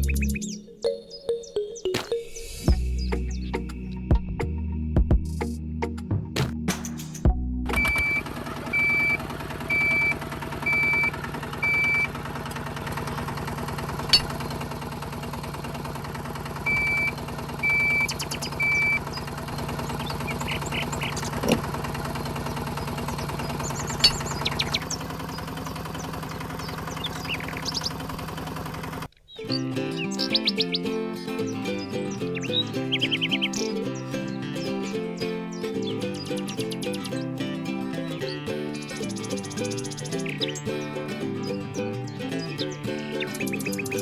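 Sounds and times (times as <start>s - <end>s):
small motor humming: 7.7s - 29.1s
high electronic beeps: 7.8s - 12.1s, 16.7s - 19.0s.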